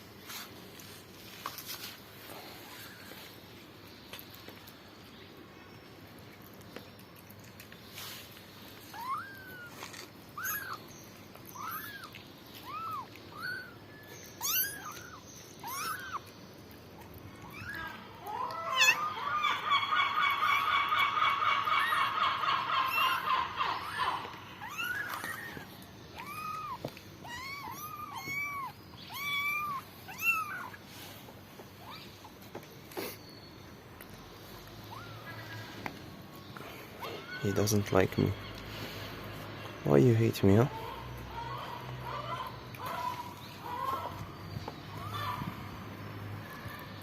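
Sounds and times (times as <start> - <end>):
kittens meowing: 8.7 - 33.3, 34.4 - 36.0, 36.6 - 38.0.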